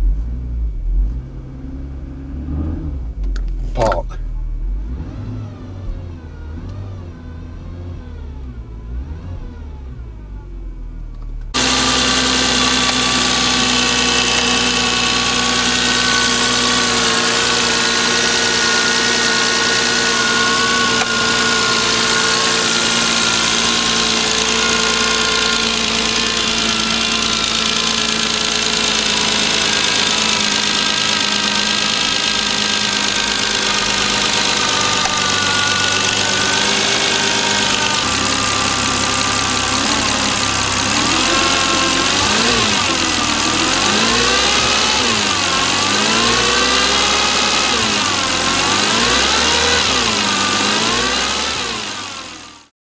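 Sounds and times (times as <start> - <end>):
car engine idling: 0.0 - 52.7
steady whine of held tones: 11.6 - 45.6.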